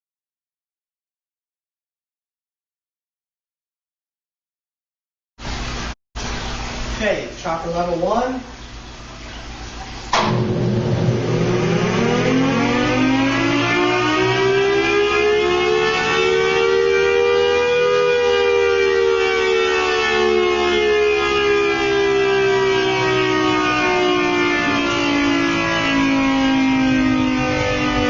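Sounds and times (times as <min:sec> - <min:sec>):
tornado siren winding up: 0:10.1 - 0:28.0.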